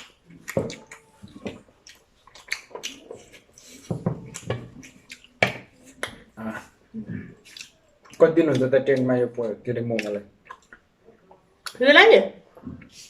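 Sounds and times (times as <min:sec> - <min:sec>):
wet chewing and lip smacks: 0:00.0 - 0:06.3, 0:07.3 - 0:11.8.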